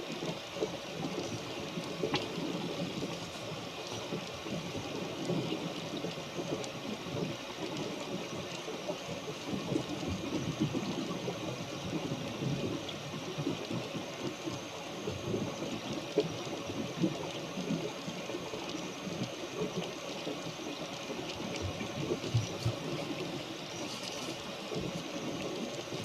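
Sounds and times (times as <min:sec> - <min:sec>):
water splashing along boat hull: 0:15.6 - 0:26.0.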